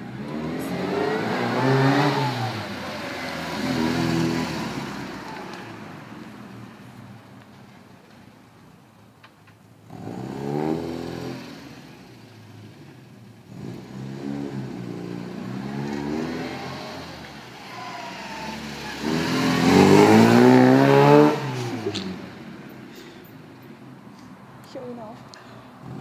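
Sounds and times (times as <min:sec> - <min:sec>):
car engine accelerating hard: 0:00.0 - 0:06.3, 0:09.9 - 0:22.7.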